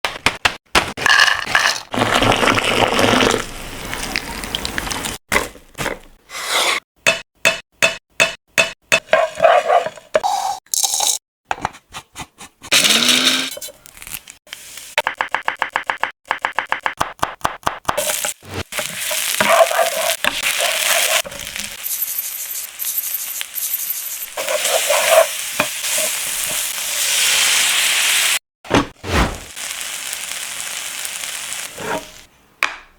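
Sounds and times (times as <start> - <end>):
food sizzling in a pan: 18.0 - 28.4, 29.4 - 32.3.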